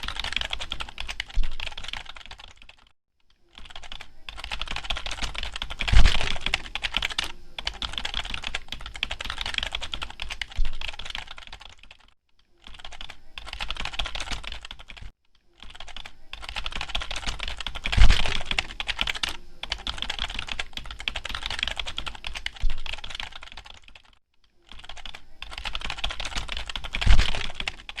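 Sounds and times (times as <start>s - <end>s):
fast keyboard typing: 0.0s - 2.9s, 3.5s - 28.0s.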